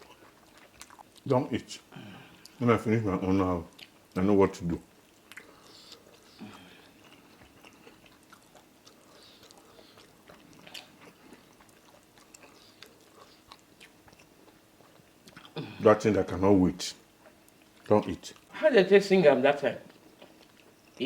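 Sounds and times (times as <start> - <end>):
person chewing: 0.0 - 16.1, 17.0 - 18.6, 19.8 - 21.0
small mouth clicks: 5.1 - 15.6.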